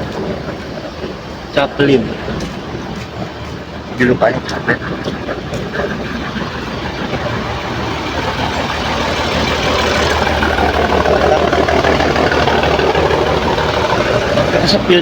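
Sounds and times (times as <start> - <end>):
diesel bus engine running: 0.0 - 15.0.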